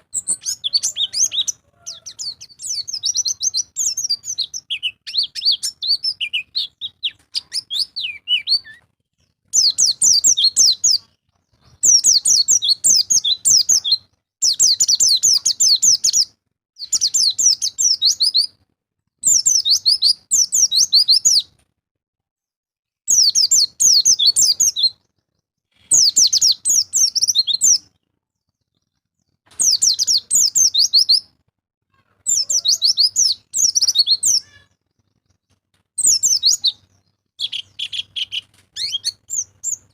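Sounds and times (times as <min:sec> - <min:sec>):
bird warbling chatter: 0:00.0 - 0:08.8, 0:32.0 - 0:34.8, 0:36.0 - 0:39.9.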